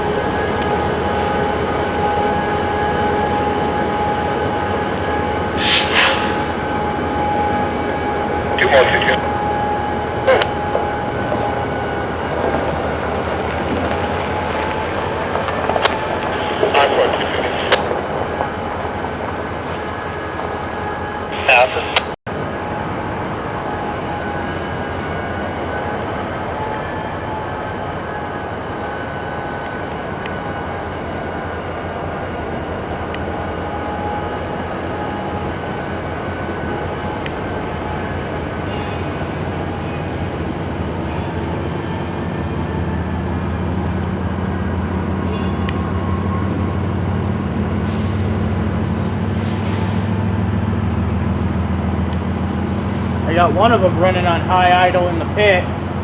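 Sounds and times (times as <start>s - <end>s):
diesel locomotive engine hum: 0.0s - 56.0s
railcars rolling past: 0.0s - 56.0s
high-pitched wheel squeal: 22.6s - 51.7s.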